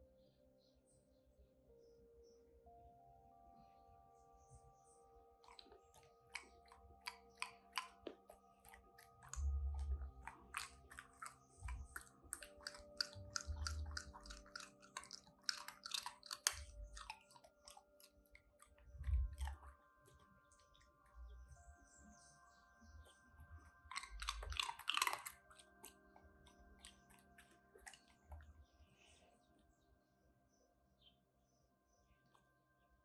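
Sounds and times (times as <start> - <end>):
dog crunching ice cubes: 5.4 - 20.9, 23.9 - 28.5.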